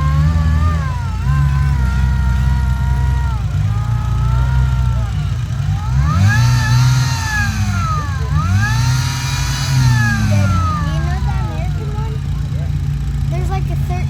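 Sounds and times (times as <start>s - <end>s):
buggy engine revving hard: 0.0s - 14.0s.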